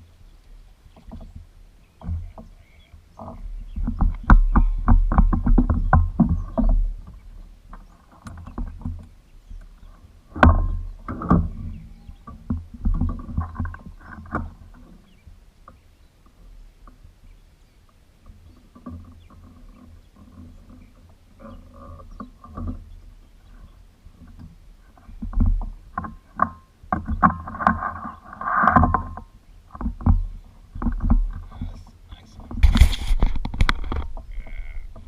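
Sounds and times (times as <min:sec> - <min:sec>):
knocks on a boat: 0:03.8 - 0:07.0
low rumbling: 0:27.1 - 0:35.0.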